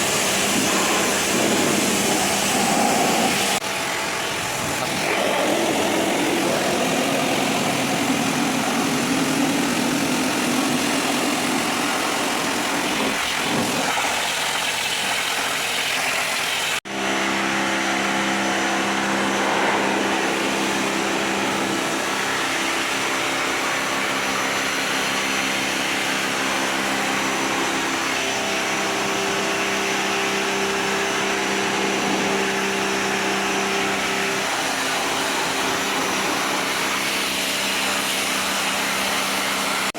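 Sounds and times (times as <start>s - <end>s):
hiss of water jet: 0.0s - 16.8s
pressure washer pump running: 0.0s - 39.9s.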